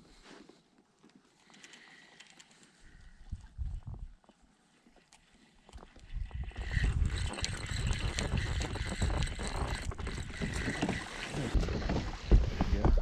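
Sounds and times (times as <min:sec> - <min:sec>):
water around a kayak: 0:02.2 - 0:13.0
wind noise: 0:03.0 - 0:04.2, 0:06.0 - 0:13.0.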